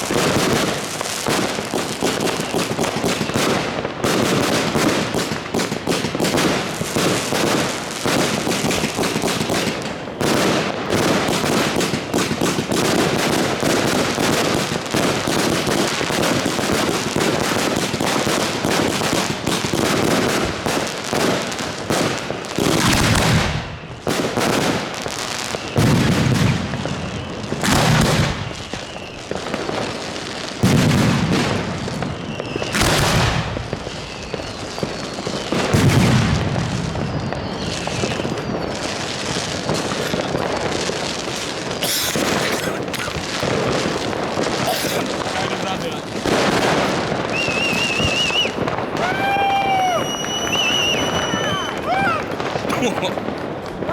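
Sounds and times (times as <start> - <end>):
firecrackers crackling: 0.0 - 53.9
heavy firework booms: 0.0 - 53.9.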